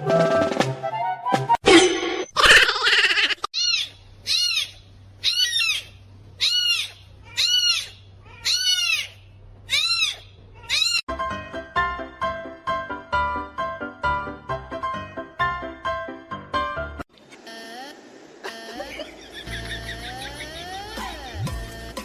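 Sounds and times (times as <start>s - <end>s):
animal high calls: 2.4s - 11.0s.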